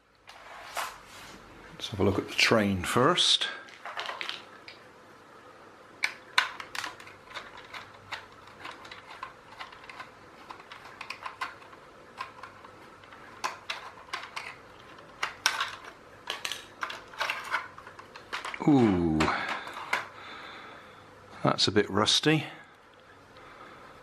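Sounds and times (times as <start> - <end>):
plastic toy parts clicking: 6.0 - 18.7.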